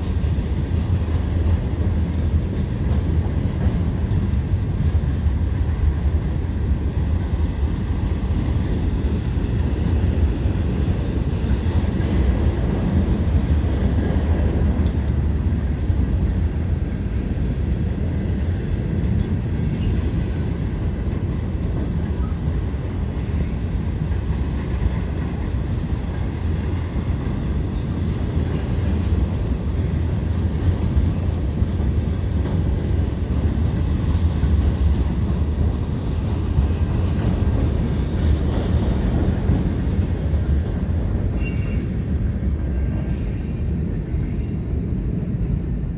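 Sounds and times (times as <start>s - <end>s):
train wheels rumbling on rail: 0.0s - 45.9s
faint wheel squeals: 19.6s - 20.6s, 41.4s - 45.1s.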